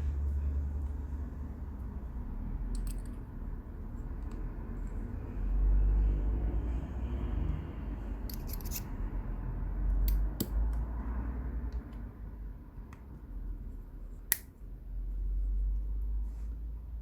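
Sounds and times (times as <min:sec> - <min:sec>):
small parts handling noise: 0:02.7 - 0:03.3, 0:08.2 - 0:08.9.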